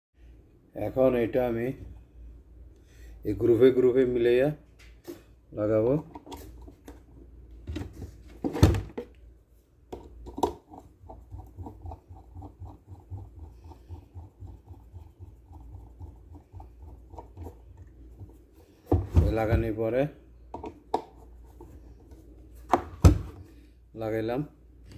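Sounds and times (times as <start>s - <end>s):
plastic blender parts knocking: 9.9s - 14.8s.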